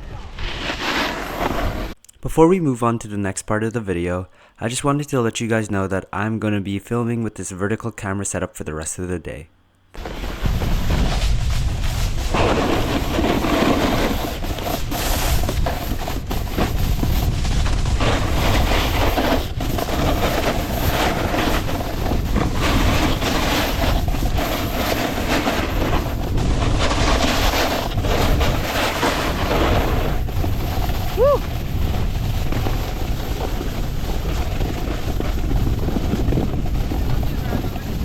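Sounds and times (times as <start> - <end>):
snowboard scraping over snow: 0.0 - 2.0, 10.0 - 38.0
wind buffeting microphone: 14.3 - 38.0.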